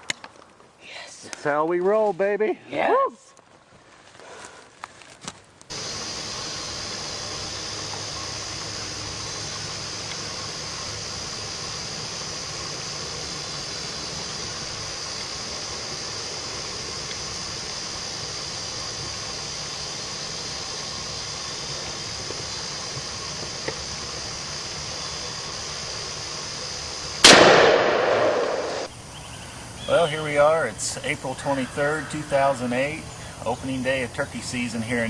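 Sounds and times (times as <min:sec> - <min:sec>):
recording hiss: 0:00.0 - 0:35.0
shotgun shot: 0:27.2 - 0:28.9.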